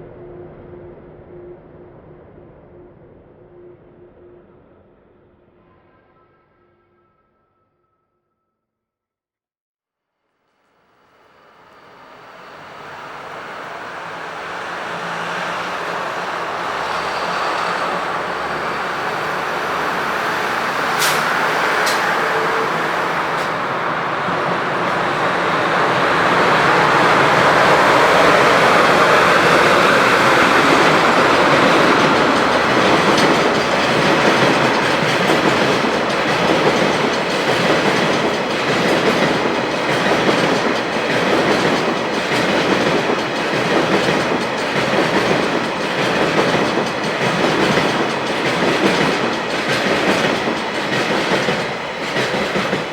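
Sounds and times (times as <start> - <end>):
freight train passing: 0.0 - 7.0, 10.7 - 52.9
wheels clicking over rail joints: 15.8 - 25.5.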